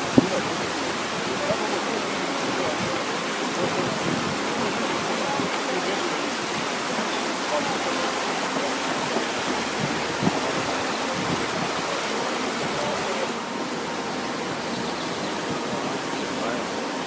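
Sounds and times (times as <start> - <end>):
floodwater rushing: 0.0 - 17.0.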